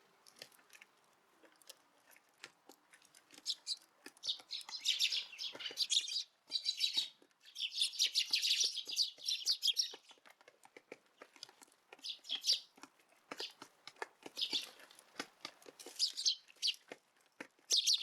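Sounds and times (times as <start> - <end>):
sparrows chirping: 3.3 - 10.2, 12.0 - 13.7, 14.3 - 15.2, 15.8 - 16.9, 17.7 - 18.0.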